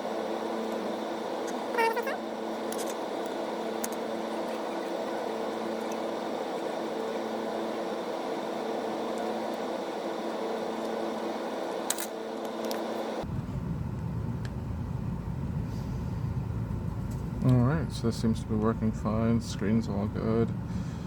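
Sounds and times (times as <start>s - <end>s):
machine hum: 0.0s - 21.0s.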